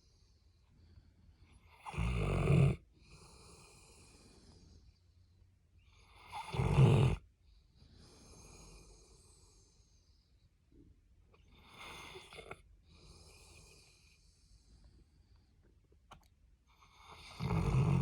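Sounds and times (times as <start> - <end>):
dog snoring: 1.4 - 4.2, 5.9 - 7.2, 11.4 - 14.2, 16.1 - 18.0
dog breathing softly: 2.8 - 6.5, 7.2 - 18.0.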